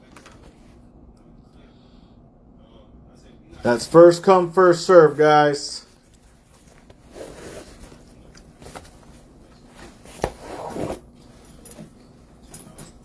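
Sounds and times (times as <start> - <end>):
faint rustling and handling: 5.8 - 13.0.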